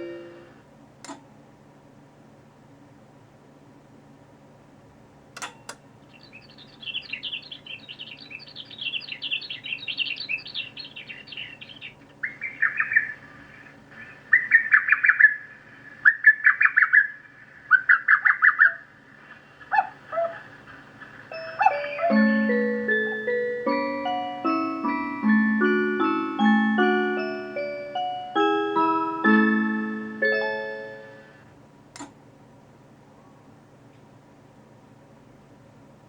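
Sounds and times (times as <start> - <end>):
train electronic birdsong chime: 0.0 - 0.6, 6.2 - 31.5
steady electrical hum: 0.0 - 36.0
click: 1.0 - 1.3, 5.4 - 5.8, 31.9 - 32.2.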